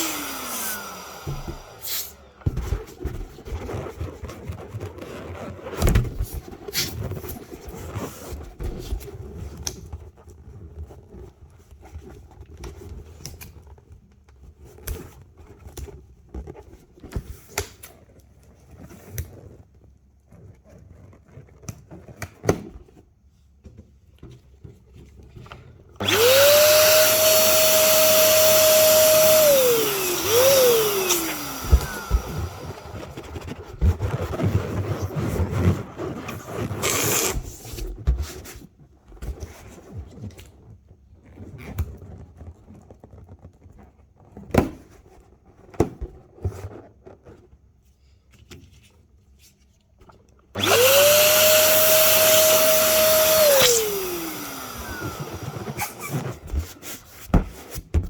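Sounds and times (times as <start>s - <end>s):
electric air blower motor whining: 0.0s - 2.6s, 26.0s - 33.4s, 50.6s - 56.4s.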